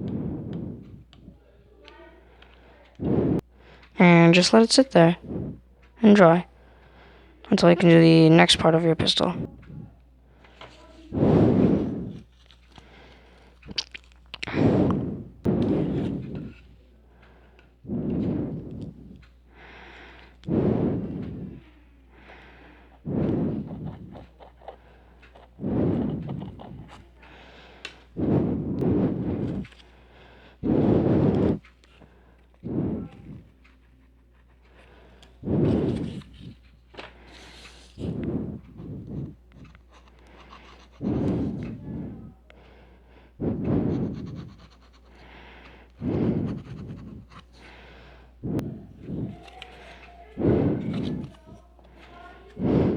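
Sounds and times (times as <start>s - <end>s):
breaths blowing on microphone: 0.0s - 1.4s, 2.9s - 3.5s, 4.3s - 33.8s, 34.8s - 52.9s
scratching on cardboard: 23.0s - 29.8s, 35.2s - 42.3s, 43.9s - 45.2s, 46.2s - 47.7s, 48.6s - 52.9s.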